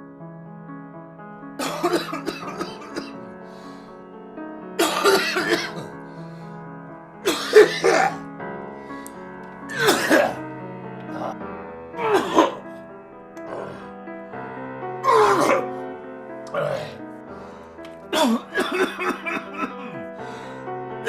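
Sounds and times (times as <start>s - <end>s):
background music with held chords: 0.0s - 21.0s
person coughing: 1.6s - 3.2s, 4.8s - 5.9s, 7.3s - 8.2s, 9.7s - 10.4s, 12.0s - 12.6s, 15.1s - 15.6s, 18.1s - 20.0s.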